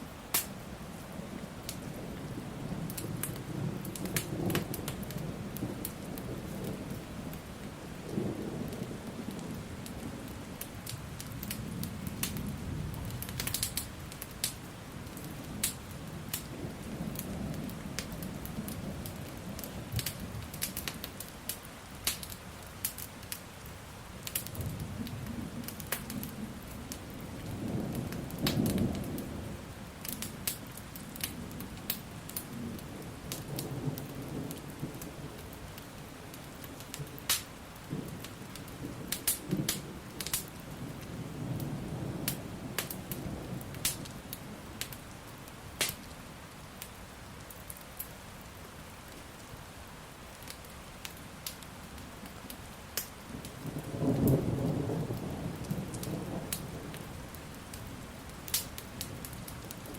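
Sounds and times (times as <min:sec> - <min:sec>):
fire crackling and popping: 0:00.0 - 0:59.9
steady rain: 0:00.0 - 0:59.9
low thunder rumbling: 0:01.2 - 0:13.6, 0:37.8 - 0:44.8, 0:53.2 - 0:59.9.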